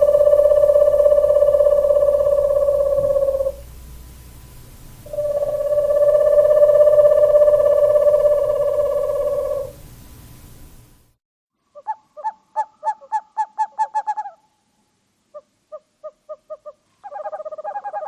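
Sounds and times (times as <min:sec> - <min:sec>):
owl trilling: 0:00.0 - 0:03.7, 0:05.1 - 0:09.8, 0:11.8 - 0:14.4, 0:15.3 - 0:18.0.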